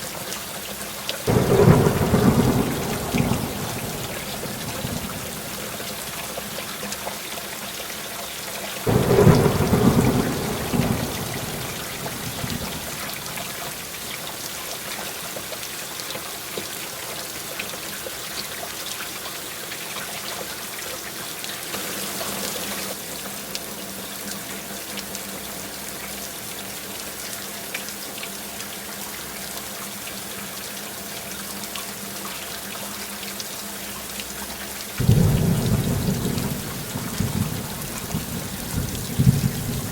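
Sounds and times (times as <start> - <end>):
heavy rain: 0.0 - 18.3, 20.3 - 27.8, 28.5 - 39.9
thunder clap rumbling: 1.3 - 5.9, 8.9 - 13.7, 35.0 - 39.9.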